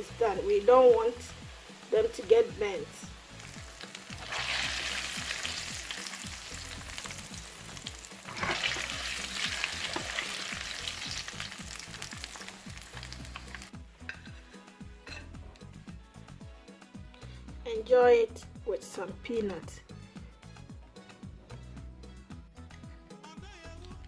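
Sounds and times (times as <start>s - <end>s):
plantain sizzling in hot oil: 0.0s - 14.5s.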